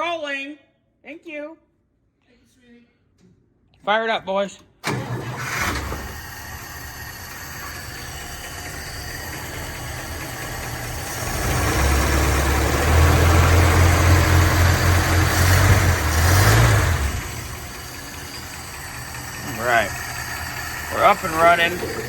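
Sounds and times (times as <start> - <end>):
pickup truck engine running: 5.0 - 22.0.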